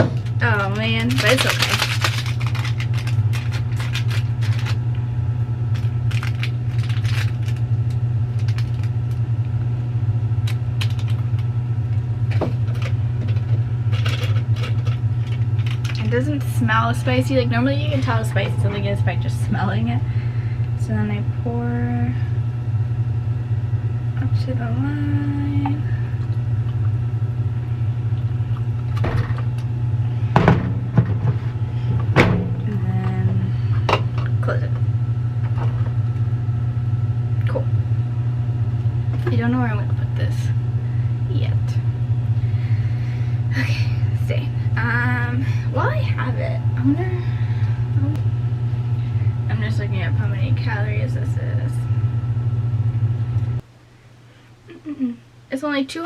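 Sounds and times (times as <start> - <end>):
steady low hum: 0.0 - 56.0
plastic packaging crinkling: 0.2 - 5.0, 5.7 - 9.2, 10.4 - 11.5, 12.6 - 16.1.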